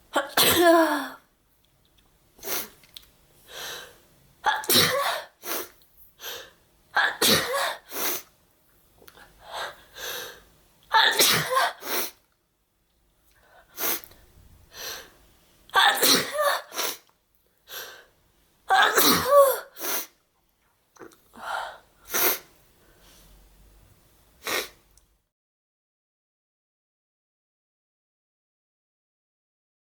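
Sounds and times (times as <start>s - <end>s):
person sneezing: 0.2s - 1.2s, 4.5s - 6.4s, 7.0s - 8.3s, 10.9s - 12.2s, 15.8s - 17.0s, 18.7s - 20.1s, 22.1s - 22.5s, 24.4s - 24.8s.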